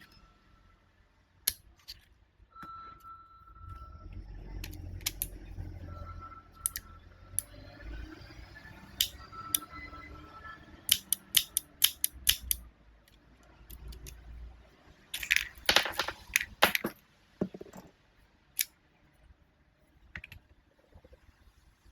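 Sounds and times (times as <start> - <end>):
toy gun mechanical clicks: 10.9 - 12.6.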